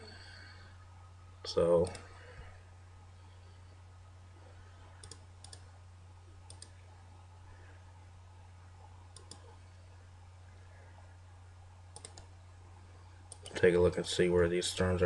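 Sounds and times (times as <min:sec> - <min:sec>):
low electrical hum: 0:00.0 - 0:15.0
computer mouse clicking: 0:05.0 - 0:05.7, 0:06.4 - 0:06.8, 0:09.1 - 0:09.6, 0:11.9 - 0:12.3, 0:13.3 - 0:13.6.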